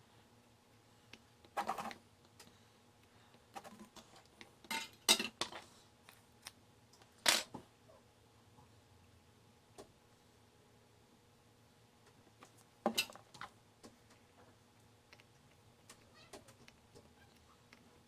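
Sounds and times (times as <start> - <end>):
faint steady hum: 0.0 - 18.0
tools clattering on a workbench: 4.7 - 5.6, 7.3 - 7.6.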